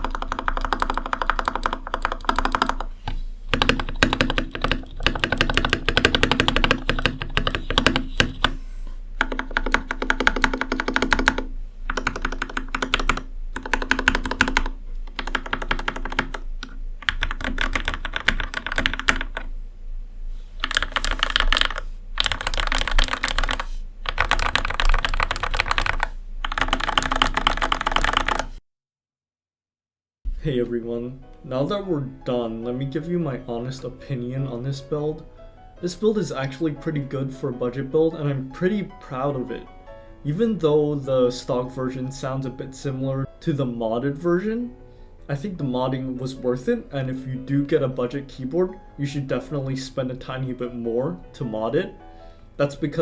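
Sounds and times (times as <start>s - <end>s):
mechanical keyboard keys clacking: 0.0s - 2.9s, 3.5s - 8.5s, 9.2s - 19.5s, 20.6s - 28.5s.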